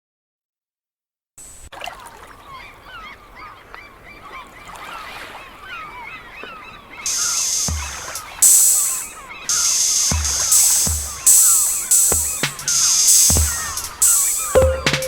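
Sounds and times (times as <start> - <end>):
flock of birds calling: 2.1 - 15.0
loud hiss: 7.1 - 15.0.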